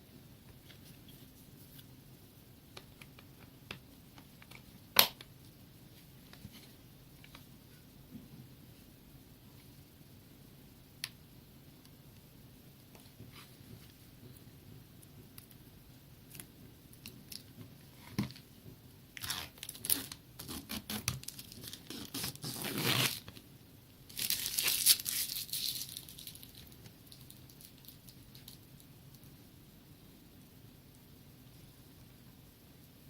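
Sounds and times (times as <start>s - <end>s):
packaging crinkling and tearing: 19.2s - 23.3s, 24.1s - 28.6s.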